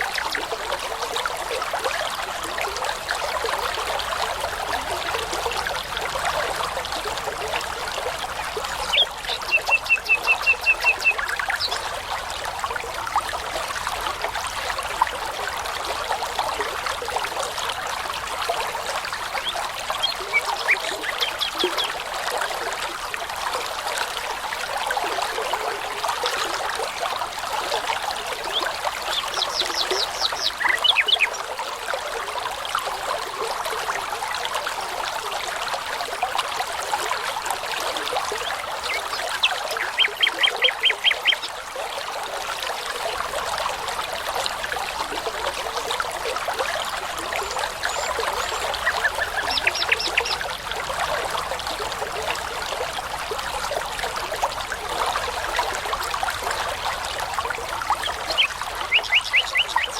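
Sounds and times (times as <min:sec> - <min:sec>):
brook babbling: 0:00.0 - 0:59.9
songbird singing: 0:08.7 - 0:11.9, 0:19.4 - 0:22.0, 0:28.5 - 0:31.5, 0:38.4 - 0:41.6, 0:47.6 - 0:50.5, 0:58.0 - 0:59.9.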